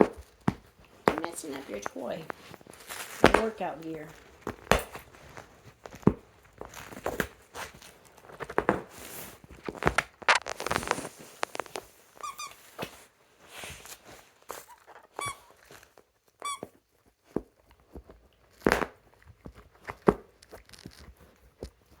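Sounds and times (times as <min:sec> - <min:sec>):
rustling and crinkling: 0:00.0 - 0:22.0
squeaky toy squeaking: 0:12.2 - 0:12.7, 0:14.7 - 0:15.6, 0:16.4 - 0:16.8.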